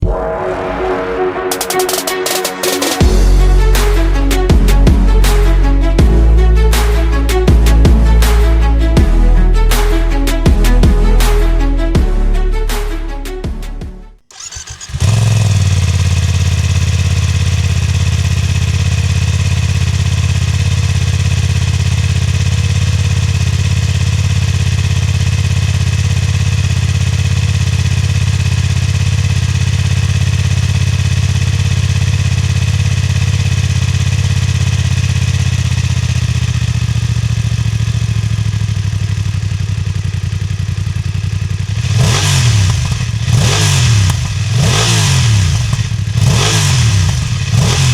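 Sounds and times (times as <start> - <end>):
motorcycle engine starting and idling: 14.2 - 47.9
motorcycle throttle blip: 42.1 - 47.9.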